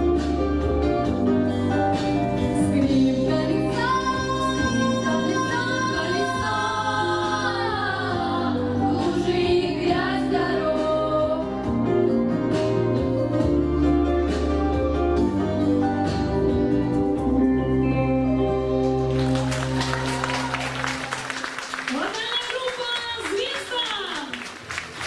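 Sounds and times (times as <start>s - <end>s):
instrumental backing with bass: 0.0s - 21.9s
vocal group singing in harmony: 2.5s - 12.2s.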